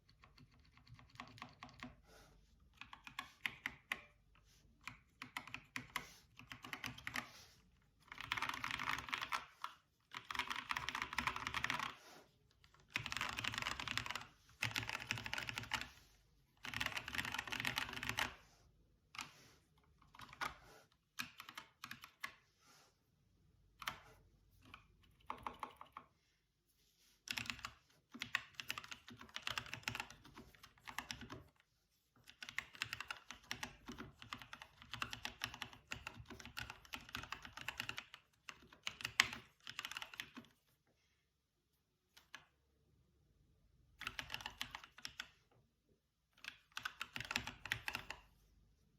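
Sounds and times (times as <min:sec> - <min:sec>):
typing on mechanical keyboard: 0:00.0 - 0:02.0, 0:02.8 - 0:04.2, 0:04.8 - 0:07.3, 0:08.0 - 0:12.0, 0:12.7 - 0:18.4, 0:20.0 - 0:20.6, 0:21.2 - 0:22.4, 0:24.6 - 0:26.1, 0:27.3 - 0:31.6, 0:32.2 - 0:40.6, 0:44.0 - 0:45.4, 0:46.3 - 0:48.3.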